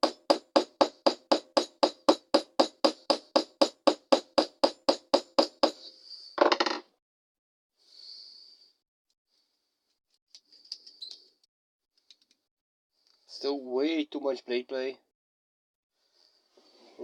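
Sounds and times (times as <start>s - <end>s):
hammer tapping on metal: 0.0s - 5.8s.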